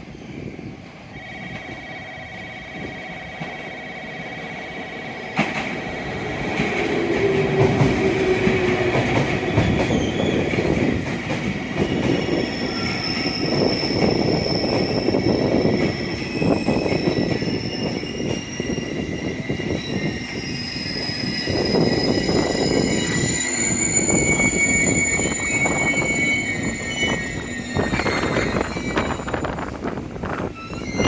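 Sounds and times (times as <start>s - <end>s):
train wheels and motors: 1.3s - 31.0s
high whining tones: 12.3s - 29.8s.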